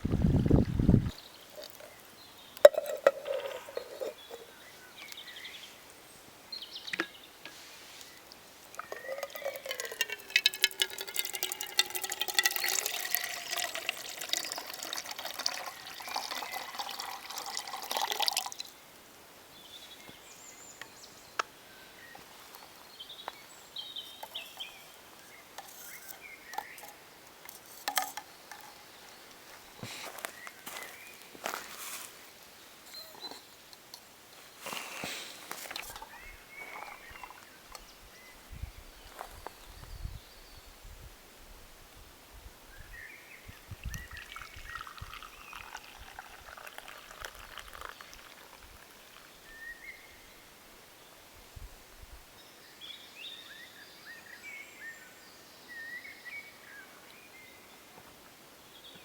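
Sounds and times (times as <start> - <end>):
liquid pouring into a cup: 8.7 - 18.7, 43.5 - 49.8.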